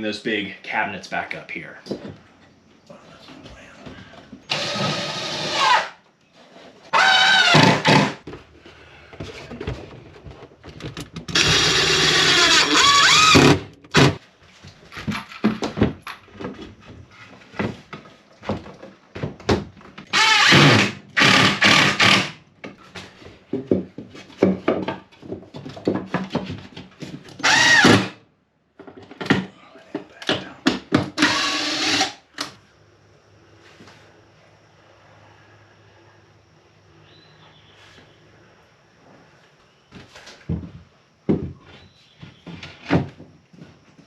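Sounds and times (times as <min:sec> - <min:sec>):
power drill whining: 0:04.5 - 0:06.0, 0:06.9 - 0:08.2, 0:11.3 - 0:14.2, 0:20.1 - 0:22.4, 0:27.4 - 0:28.2, 0:31.2 - 0:32.2
handling knocks and clatter: 0:08.2 - 0:11.4, 0:13.8 - 0:20.1, 0:22.7 - 0:27.4.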